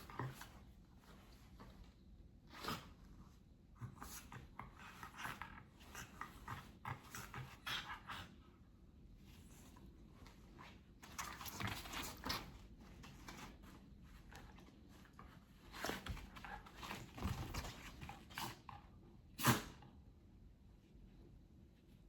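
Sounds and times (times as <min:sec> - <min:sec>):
dog and cat scuffling: 0:00.0 - 0:08.3, 0:09.2 - 0:18.9.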